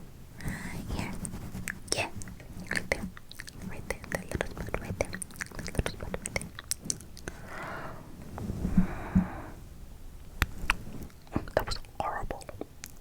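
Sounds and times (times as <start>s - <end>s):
mouth clicks: 1.7s - 7.4s
breaths: 7.3s - 9.8s.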